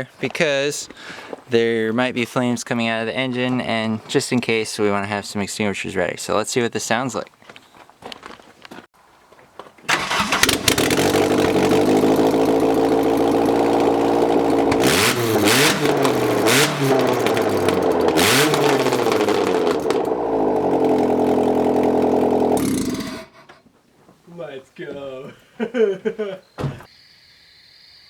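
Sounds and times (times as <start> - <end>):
engine revving with sharp cracks: 9.9 - 23.4
car engine running loud: 10.0 - 23.2.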